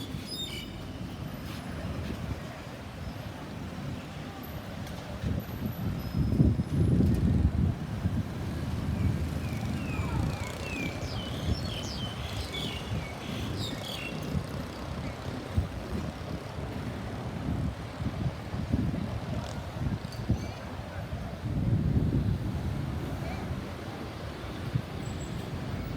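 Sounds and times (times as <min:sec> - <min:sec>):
road traffic rumble: 0:00.0 - 0:25.9.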